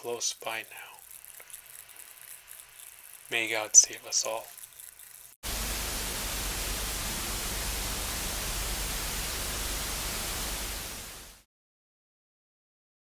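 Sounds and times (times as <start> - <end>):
radio static hiss: 0.1 - 4.8, 5.5 - 11.4.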